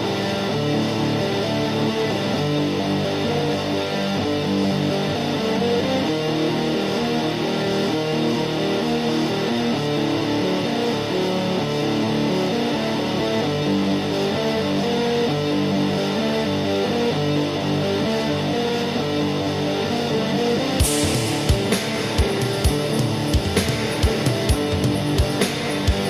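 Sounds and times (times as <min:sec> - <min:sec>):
atmospheric metal music: 0:00.0 - 0:26.0.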